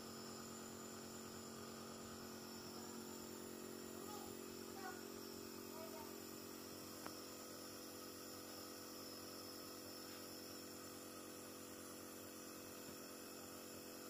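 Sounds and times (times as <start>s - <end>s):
light hiss: 6.7s - 14.0s.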